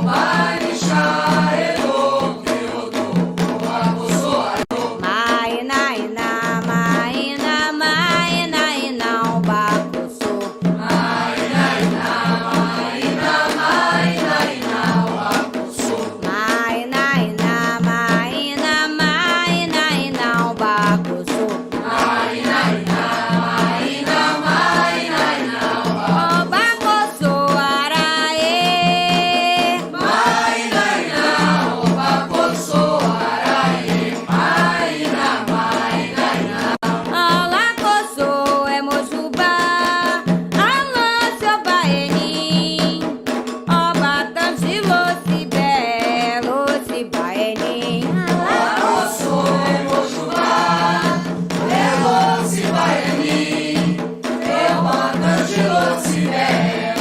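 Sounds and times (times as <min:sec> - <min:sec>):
voices singing a chant: 0:00.0 - 0:05.4, 0:09.8 - 0:18.2, 0:21.7 - 0:37.4, 0:48.0 - 0:57.0
drum rhythm: 0:00.0 - 0:57.0.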